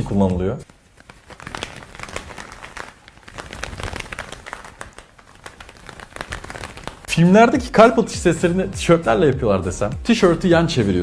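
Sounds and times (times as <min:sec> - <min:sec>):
leather gloves slapping: 0:00.2 - 0:07.9.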